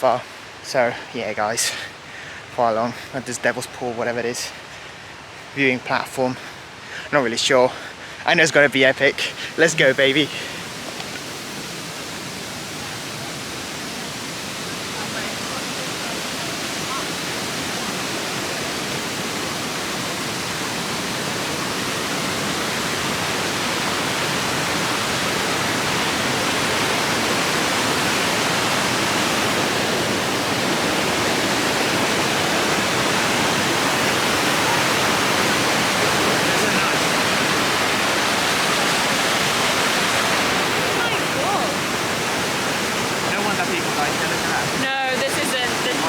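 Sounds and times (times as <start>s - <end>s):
creek water rushing: 0.0s - 46.0s.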